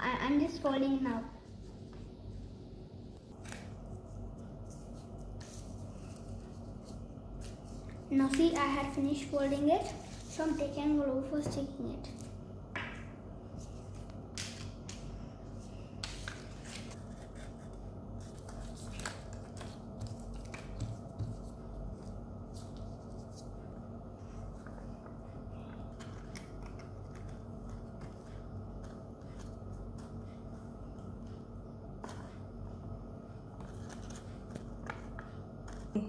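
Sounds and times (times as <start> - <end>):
steady low hum: 0.0 - 36.0
paper rustling and tapping: 18.3 - 22.9, 25.9 - 30.5, 33.6 - 35.9.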